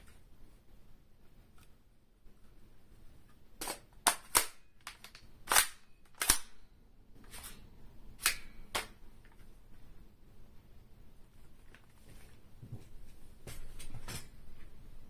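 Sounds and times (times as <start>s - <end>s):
airsoft gun mechanical clicks: 3.6s - 6.6s.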